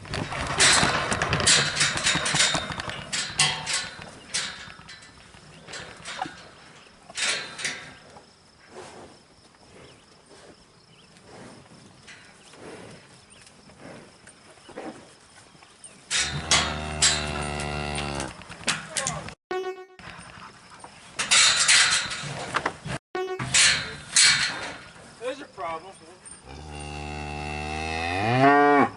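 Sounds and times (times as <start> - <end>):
cattle hooves knocking on rails: 0.0 - 8.0, 16.1 - 19.4.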